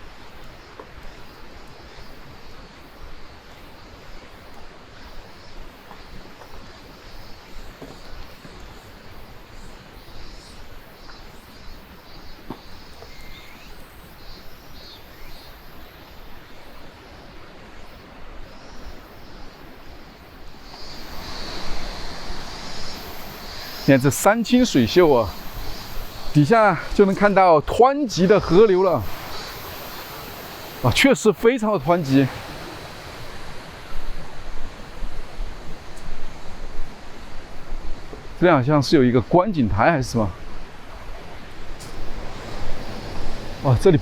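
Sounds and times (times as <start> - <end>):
faint high chirps: 9.5 - 15.6
fast-flowing river rushing: 20.6 - 44.0.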